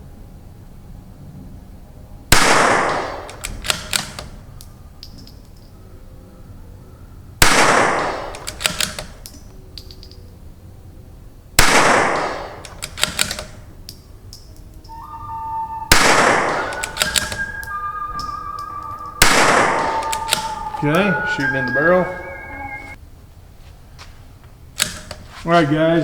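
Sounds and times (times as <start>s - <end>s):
rifle shots: 11.6s - 13.2s.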